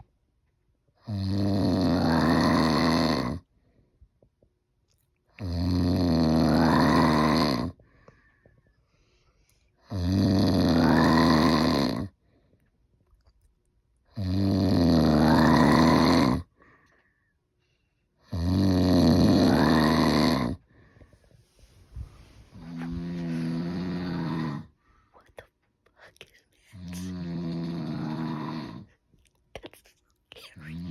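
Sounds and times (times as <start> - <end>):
loud snoring: 1.0 - 3.4, 5.4 - 7.8, 9.9 - 12.1, 14.2 - 16.5, 18.3 - 20.6, 22.5 - 24.7, 26.8 - 28.9.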